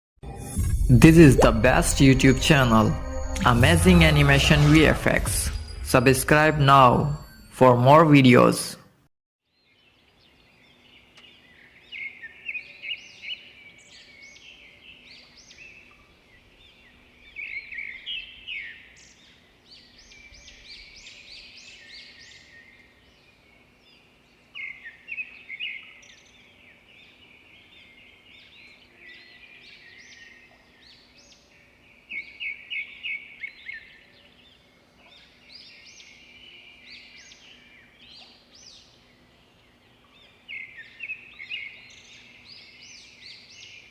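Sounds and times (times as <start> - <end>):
songbirds chirping: 9.5 - 43.9.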